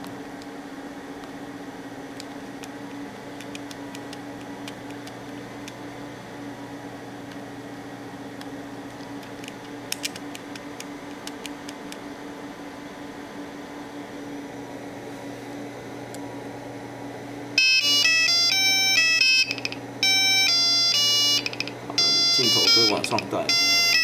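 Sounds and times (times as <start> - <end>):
faint steady hum: 0.0 - 24.0
alarm clock buzzer melody: 17.6 - 24.0.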